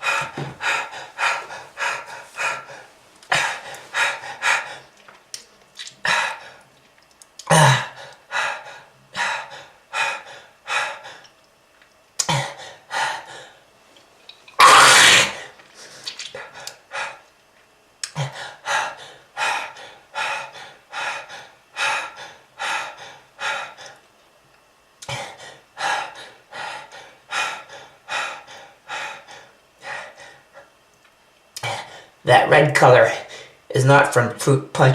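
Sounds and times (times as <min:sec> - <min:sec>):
person coughing hard: 0:07.5 - 0:08.0, 0:14.6 - 0:15.5.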